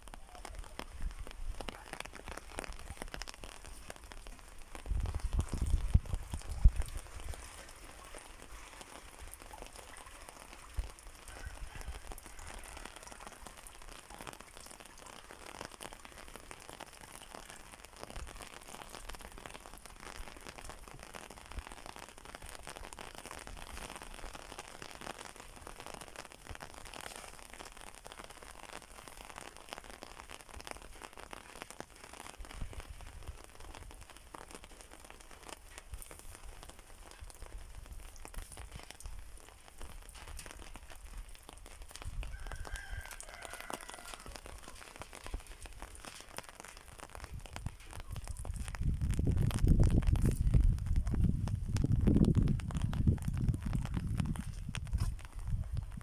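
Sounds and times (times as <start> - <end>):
rain pattering on surfaces: 0.0 - 56.0.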